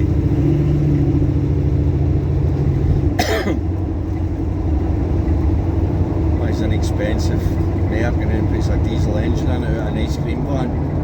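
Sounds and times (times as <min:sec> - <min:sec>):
car engine running inside cabin: 0:00.0 - 0:11.0
person coughing: 0:03.2 - 0:03.7.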